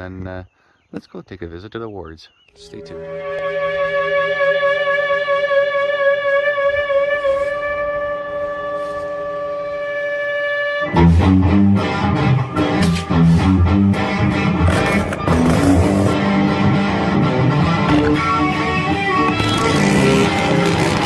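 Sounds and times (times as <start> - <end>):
held wavering tone: 2.6 - 10.9
band with strummed guitar: 10.9 - 21.0.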